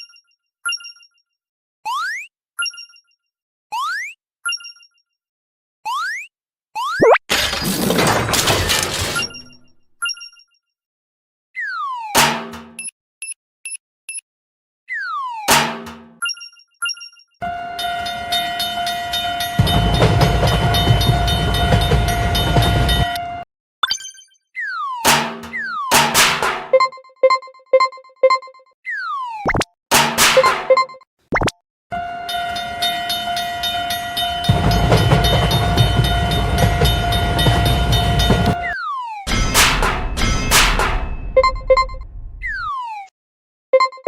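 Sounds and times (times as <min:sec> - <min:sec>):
crossing bell clanging: 0:17.7 - 0:23.4, 0:32.2 - 0:38.7
passing train rumble: 0:18.1 - 0:23.2, 0:32.4 - 0:38.6.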